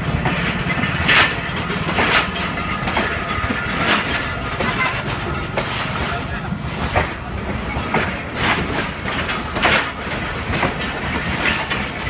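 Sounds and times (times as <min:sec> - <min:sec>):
train low rumble: 0:00.0 - 0:12.0
train wheels clanking over joints: 0:00.0 - 0:12.0.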